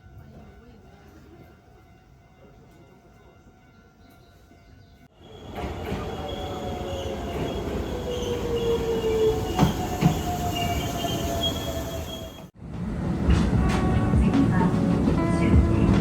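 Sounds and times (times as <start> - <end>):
train rumbling on rails: 5.1 - 16.0.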